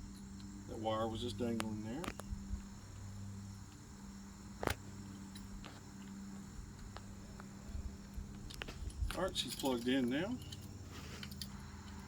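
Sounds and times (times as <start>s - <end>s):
low hum: 0.0s - 12.0s.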